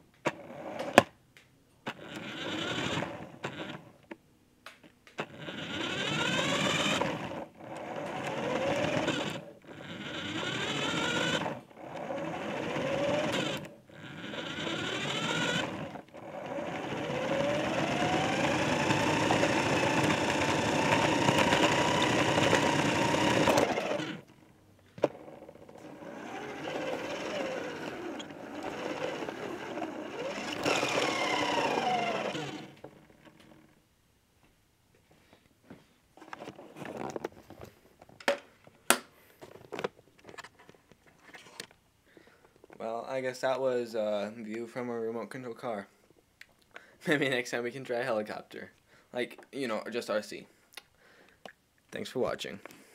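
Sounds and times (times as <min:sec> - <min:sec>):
small electric motor whining: 0:01.9 - 0:04.0, 0:05.2 - 0:33.8.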